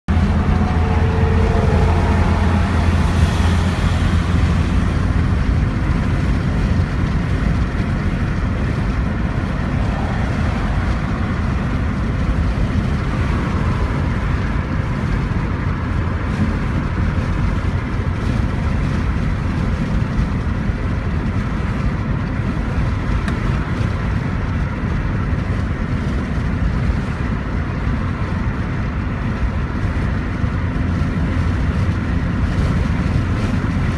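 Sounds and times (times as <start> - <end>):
car engine running: 0.0 - 33.9.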